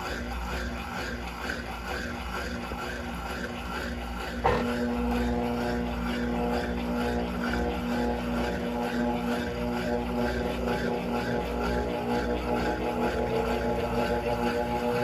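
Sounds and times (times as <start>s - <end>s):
washing machine motor humming: 4.4s - 15.0s.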